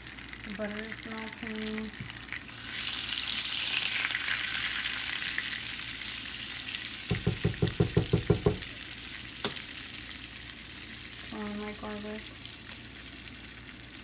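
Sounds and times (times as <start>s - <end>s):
butter sizzling in a pan: 0.0s - 14.0s
quick knocks: 7.1s - 8.7s.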